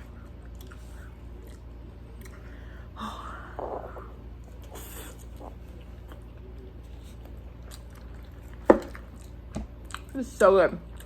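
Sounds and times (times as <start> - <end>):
steady low hum: 0.0 - 11.0
person chewing: 0.3 - 2.5, 7.1 - 10.1.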